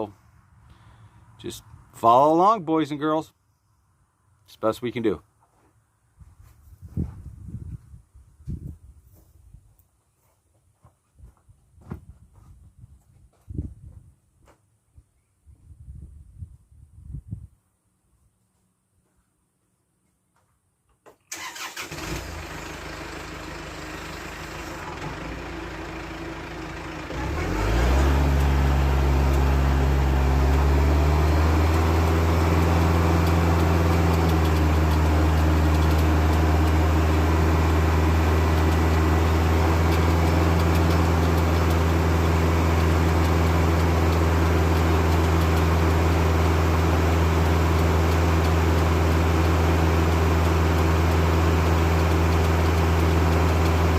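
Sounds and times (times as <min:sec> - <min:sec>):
diesel tractor engine revving: 0:21.3 - 0:53.9.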